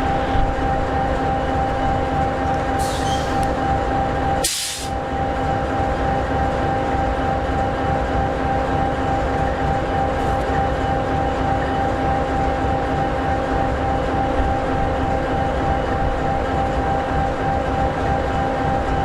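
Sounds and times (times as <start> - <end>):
diesel locomotive idling: 0.0 - 19.0
air hissing: 4.4 - 4.9.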